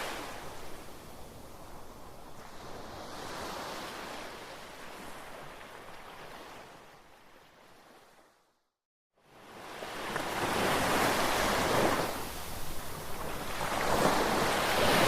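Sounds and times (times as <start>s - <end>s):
ocean surf rushing: 10.3s - 15.0s.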